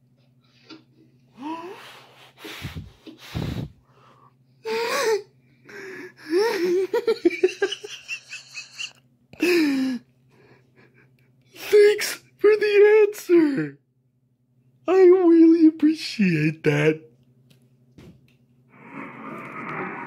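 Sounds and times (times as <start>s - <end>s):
people laughing: 6.4s - 9.0s.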